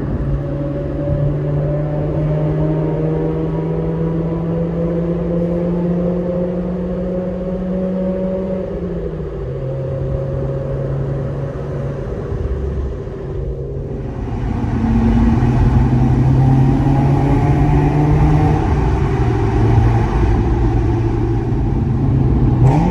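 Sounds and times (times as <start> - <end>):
rotary engine exhaust note: 13.5 - 22.9.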